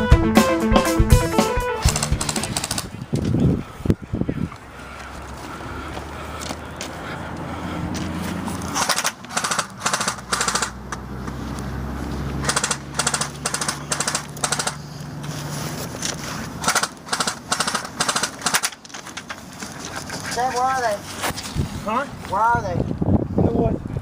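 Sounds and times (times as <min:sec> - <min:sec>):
airsoft gun full-auto bursts: 0:01.8 - 0:03.0, 0:08.8 - 0:10.8, 0:12.4 - 0:14.8, 0:16.6 - 0:18.7.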